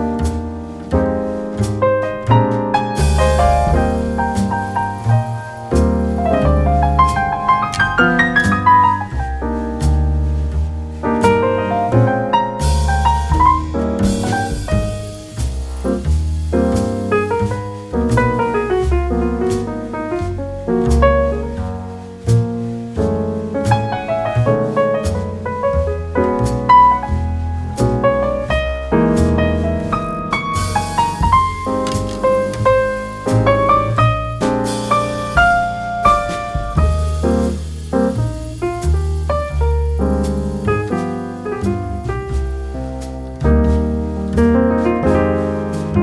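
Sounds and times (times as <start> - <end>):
piano background music: 0.0 - 46.0.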